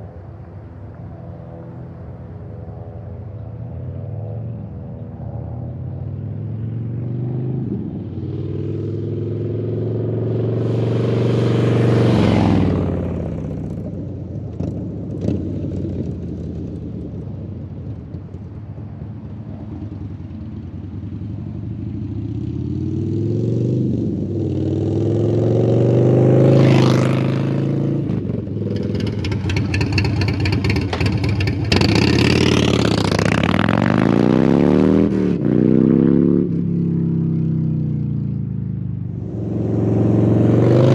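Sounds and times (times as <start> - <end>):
motorcycle engine revving: 6.7 - 16.6, 22.1 - 40.9.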